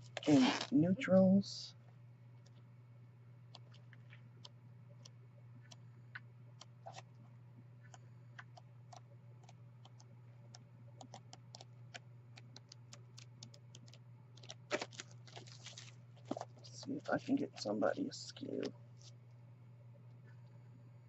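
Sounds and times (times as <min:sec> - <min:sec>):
steady low hum: 0:00.0 - 0:21.0
paper and plastic packaging rustling: 0:14.4 - 0:17.6.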